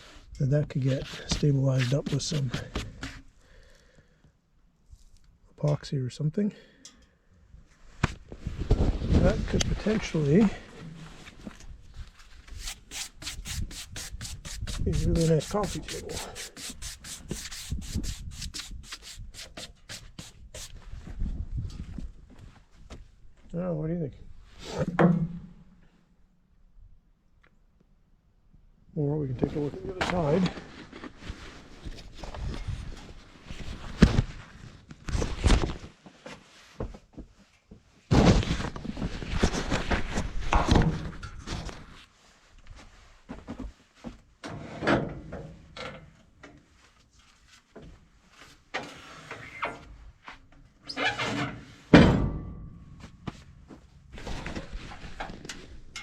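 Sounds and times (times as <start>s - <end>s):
wood scraping against wood: 0.8s - 3.3s, 12.5s - 20.8s
brushing strokes over wood: 12.5s - 20.8s.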